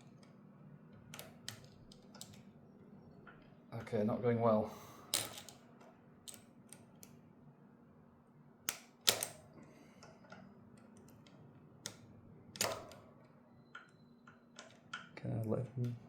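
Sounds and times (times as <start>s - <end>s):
pliers clicking on metal: 6.3s - 7.2s.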